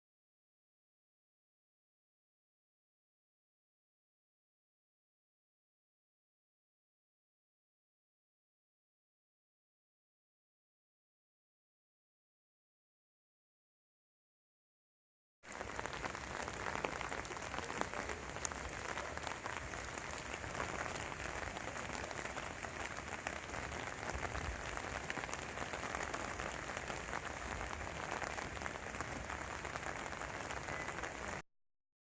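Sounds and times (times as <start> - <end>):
heavy rain patter: 15.5 - 31.4.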